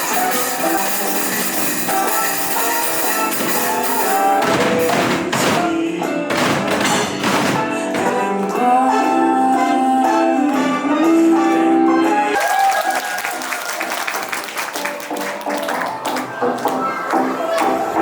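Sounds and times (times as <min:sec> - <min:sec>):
sharp strokes: 0:00.0 - 0:04.9
music with held notes: 0:00.0 - 0:12.4.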